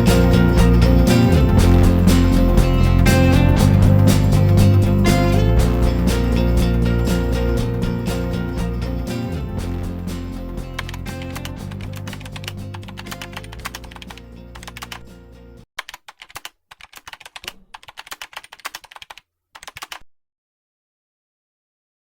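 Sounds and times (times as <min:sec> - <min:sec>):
background music: 0:00.0 - 0:15.6
keyboard key clicks: 0:15.8 - 0:20.0.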